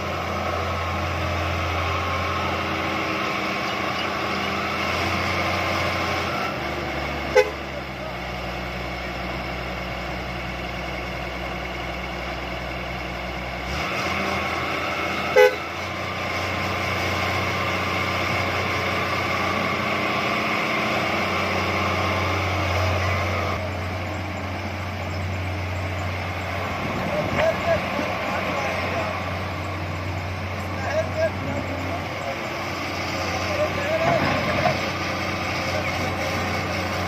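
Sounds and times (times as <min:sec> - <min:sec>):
excavator diesel engine running: 0:00.0 - 0:37.0
short horn toot: 0:07.3 - 0:07.6, 0:15.3 - 0:15.7.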